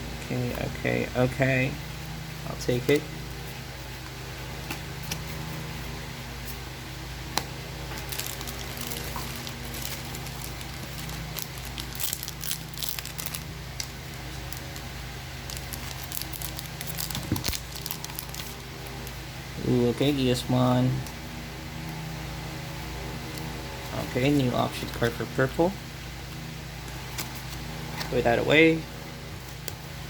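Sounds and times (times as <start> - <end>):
steady low hum: 0.0 - 30.0
trading cards being handled: 2.6 - 5.8, 7.3 - 19.2, 26.3 - 28.3
plastic wrappers crinkling: 7.9 - 19.2.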